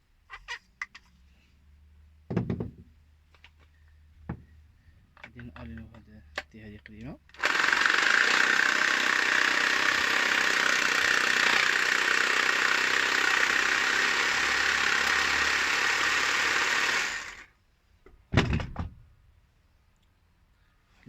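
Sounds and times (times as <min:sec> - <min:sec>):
electric power tool on metal: 0:07.4 - 0:17.5.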